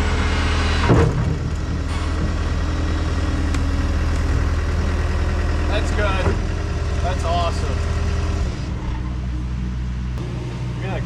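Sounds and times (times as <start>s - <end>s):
skid steer engine idling: 0.0s - 11.0s.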